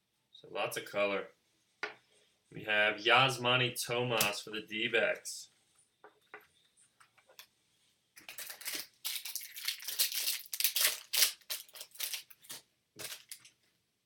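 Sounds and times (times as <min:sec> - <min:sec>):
foil wrapper tearing and crinkling: 0:08.2 - 0:13.5.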